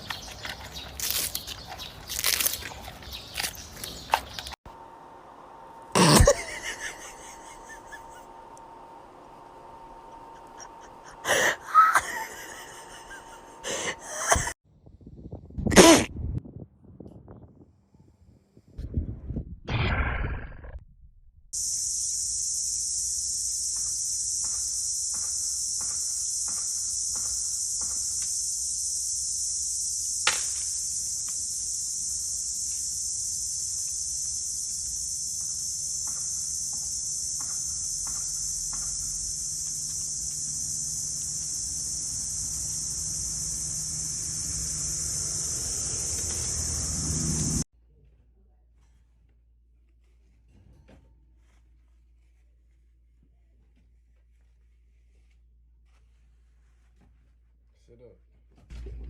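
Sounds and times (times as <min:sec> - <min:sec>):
insect chorus: 0:10.1 - 0:14.4, 0:21.6 - 0:47.6.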